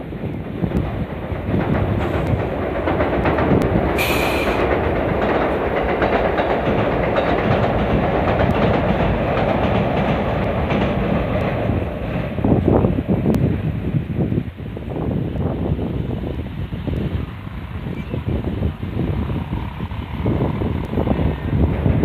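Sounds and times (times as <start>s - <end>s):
electric train rumbling: 0.0s - 22.0s
train hiss: 1.9s - 2.6s, 3.7s - 4.8s.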